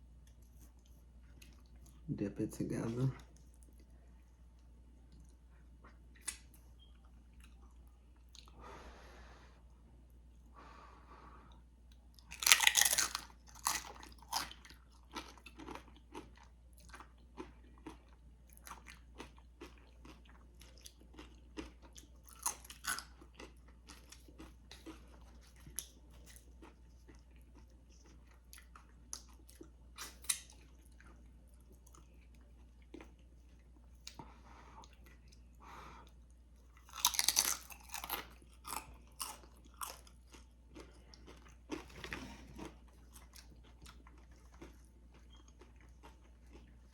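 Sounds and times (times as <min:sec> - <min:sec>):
crisp chewing: 0:11.9 - 0:34.2, 0:36.2 - 0:46.9
crunching tortilla chips: 0:12.2 - 0:31.2, 0:36.8 - 0:46.8.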